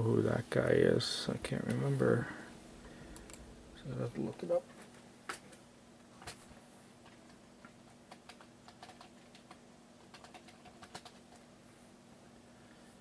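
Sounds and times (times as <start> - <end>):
typing on computer keyboard: 7.9 - 11.4.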